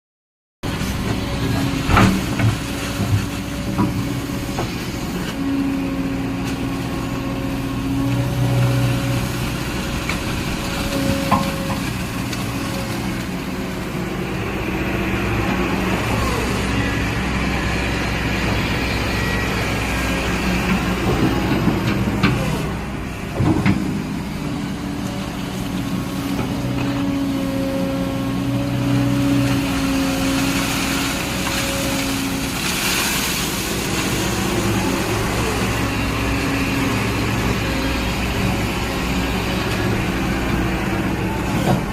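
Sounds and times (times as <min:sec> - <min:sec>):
excavator diesel engine: 0:00.6 - 0:41.9.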